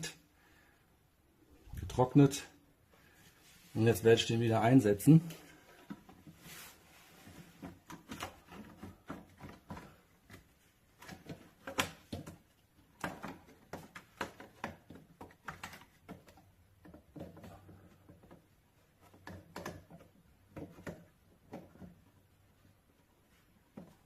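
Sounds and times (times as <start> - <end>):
plastic fan propeller clicks and knocks: 7.6 - 22.4.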